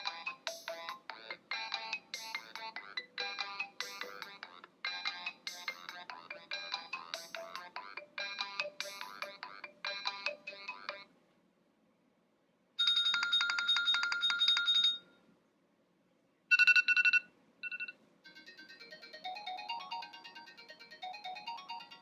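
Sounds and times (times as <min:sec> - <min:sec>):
phone ringtones: 0:01.8 - 0:10.9, 0:12.8 - 0:15.1, 0:16.5 - 0:22.0.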